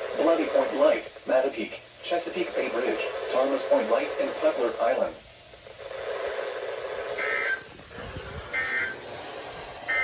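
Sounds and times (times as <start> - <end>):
faint radio hiss: 0.0 - 10.0
buzzing two-tone digital chirps: 7.2 - 7.7, 8.5 - 9.1.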